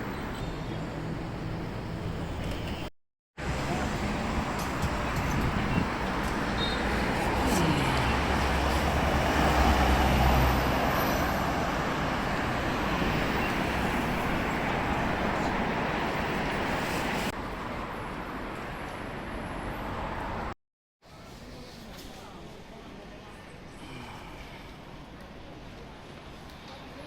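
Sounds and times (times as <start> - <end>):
road noise: 0.0 - 21.2.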